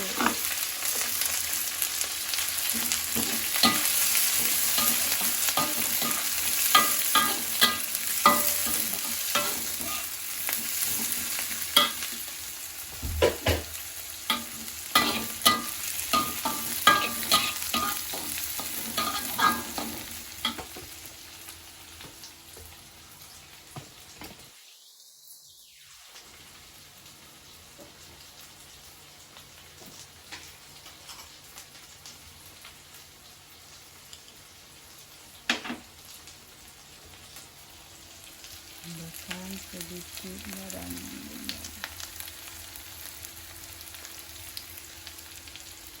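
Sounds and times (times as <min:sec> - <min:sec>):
shallots sizzling in hot oil: 0:00.0 - 0:46.0
spatula scraping pan: 0:02.7 - 0:12.2, 0:14.3 - 0:20.6.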